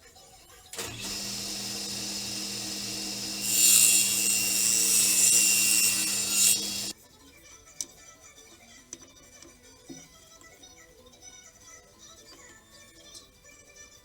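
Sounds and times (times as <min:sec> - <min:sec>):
electric power tool humming: 0:00.8 - 0:06.9
power tool cutting into wood: 0:00.8 - 0:07.0.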